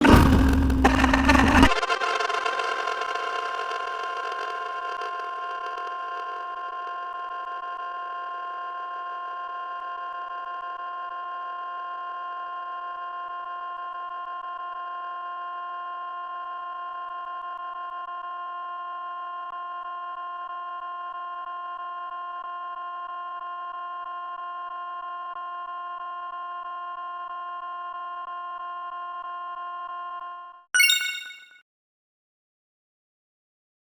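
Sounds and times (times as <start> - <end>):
bright high sound effect: 30.8 - 31.6
held electronic tone: 30.8 - 31.6.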